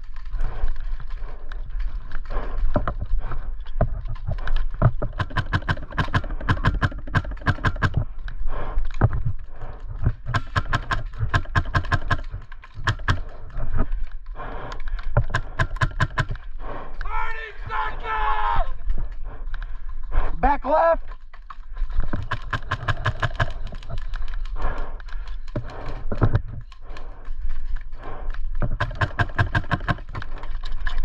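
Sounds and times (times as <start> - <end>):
airsoft guns firing: 5.1 - 8.1, 10.3 - 13.3, 22.2 - 23.7, 28.8 - 30.2.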